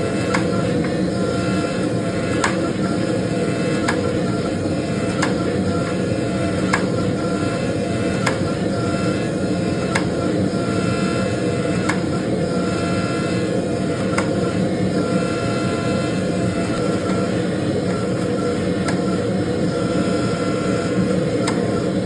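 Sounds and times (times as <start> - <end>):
forging press running: 0.0 - 22.0
thin whine: 0.0 - 22.0
sharp click: 0.3 - 1.0, 2.4 - 3.0, 3.8 - 4.4, 5.1 - 5.6, 6.6 - 7.1, 8.2 - 8.6, 9.9 - 10.3, 11.8 - 12.2, 14.1 - 14.6, 17.9 - 19.3, 21.4 - 21.9.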